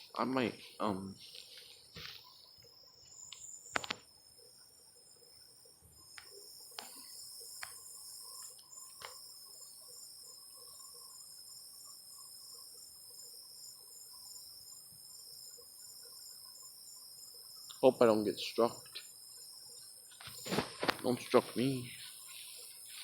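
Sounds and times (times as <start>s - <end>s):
crickets chirping: 0.0s - 23.0s
sharp clicks: 3.3s - 4.0s.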